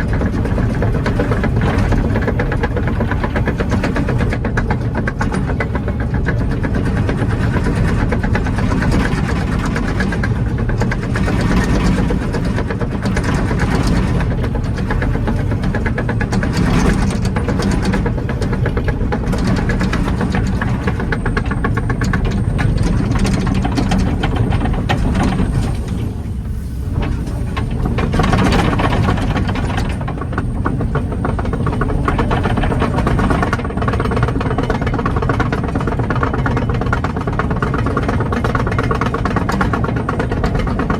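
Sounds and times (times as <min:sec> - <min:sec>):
excavator diesel engine running: 0:00.0 - 0:40.9
rattle of track clicks: 0:00.0 - 0:40.9.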